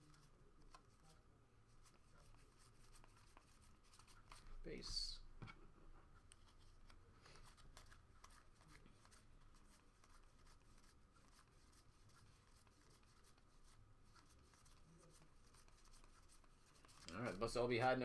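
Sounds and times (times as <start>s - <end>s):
trading cards flipping: 6.3s - 11.5s.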